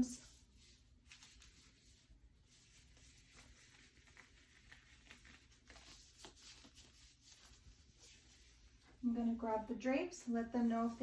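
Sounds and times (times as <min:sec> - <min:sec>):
rustles and clicks of gloves: 0:00.6 - 0:09.0.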